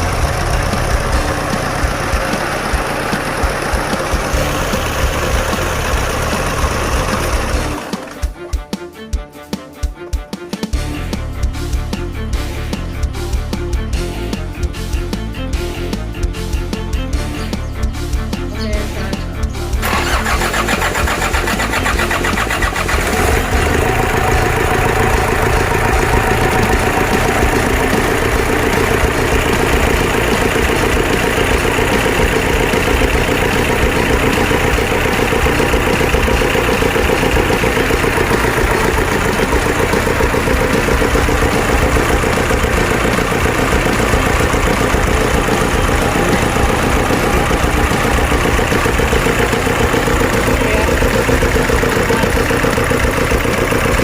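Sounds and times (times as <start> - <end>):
diesel engine idling: 0.0 - 8.4, 11.0 - 54.0.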